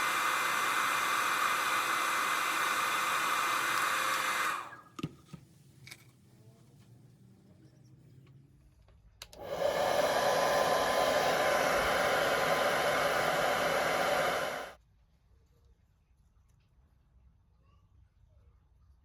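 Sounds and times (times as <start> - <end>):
hair dryer blowing: 0.0 - 4.8, 9.4 - 14.8
hair dryer switch click: 0.0 - 4.8.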